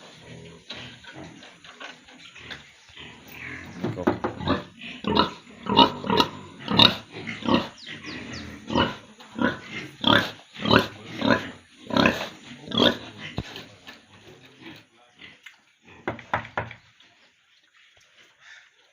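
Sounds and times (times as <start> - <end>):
pigs grunting and squealing: 0.0 - 16.4.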